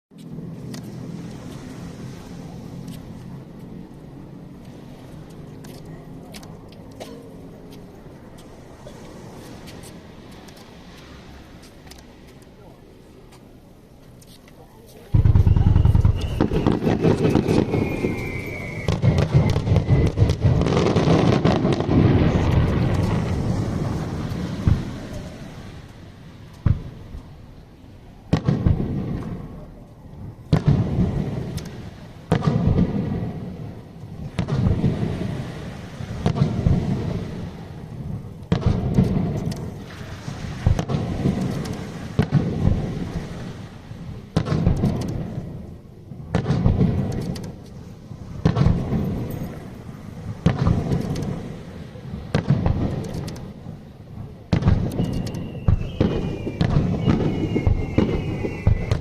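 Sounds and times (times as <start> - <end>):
fireworks booming: 15.0 - 59.0
echoing rumble: 15.1 - 27.1.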